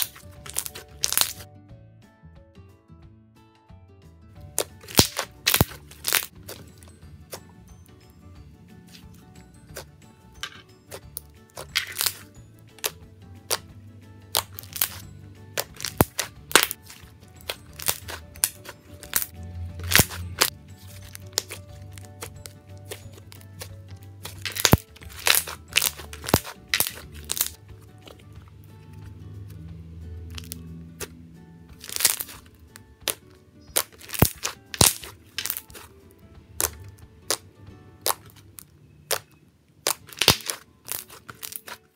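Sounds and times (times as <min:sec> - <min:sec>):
slime popping and clicking: 0:00.0 - 0:01.4, 0:04.5 - 0:06.6, 0:10.9 - 0:13.6, 0:14.3 - 0:15.0, 0:15.6 - 0:20.5, 0:21.1 - 0:27.6, 0:31.8 - 0:35.9, 0:36.6 - 0:37.4, 0:38.0 - 0:41.8
background music: 0:00.0 - 0:41.9.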